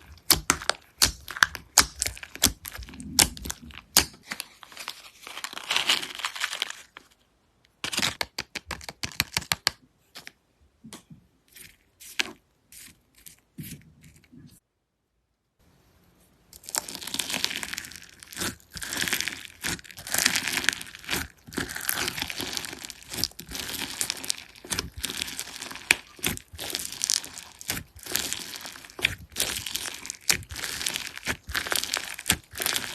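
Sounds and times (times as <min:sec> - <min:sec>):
slime crackling when squeezed: 0:16.6 - 0:32.9.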